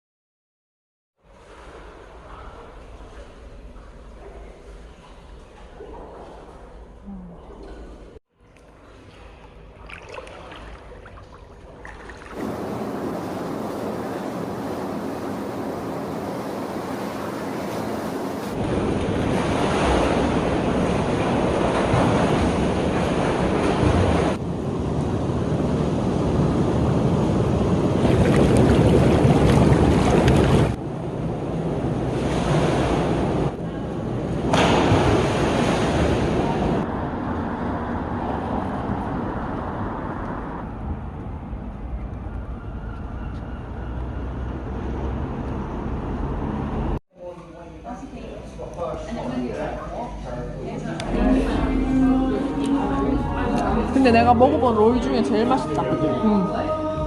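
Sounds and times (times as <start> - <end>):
sea surf: 12.0 - 40.4.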